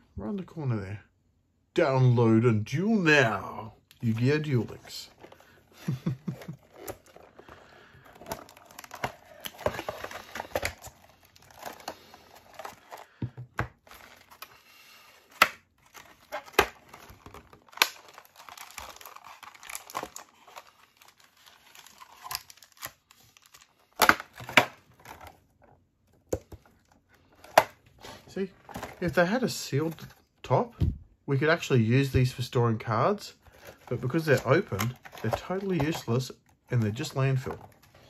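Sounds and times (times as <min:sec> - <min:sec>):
plastic wrap crinkling: 0:04.0 - 0:25.6
cardboard tearing: 0:05.2 - 0:13.2, 0:15.2 - 0:25.3.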